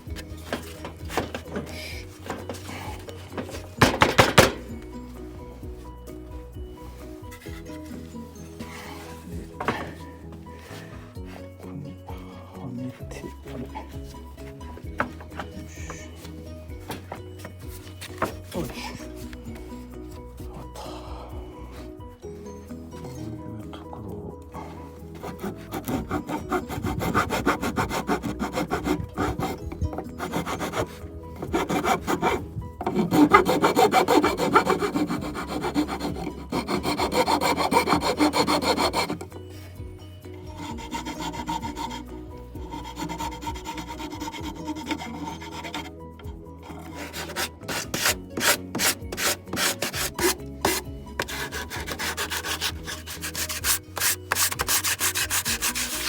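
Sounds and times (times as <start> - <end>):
sanding wood by hand: 25.1 - 39.3, 40.5 - 45.9, 46.6 - 56.0.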